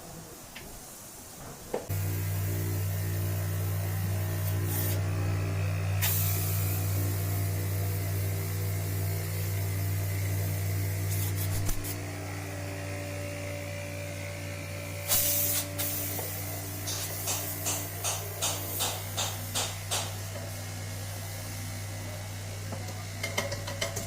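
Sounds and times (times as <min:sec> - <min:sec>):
low electrical hum: 0:00.0 - 0:24.0
short hiss: 0:15.0 - 0:16.2.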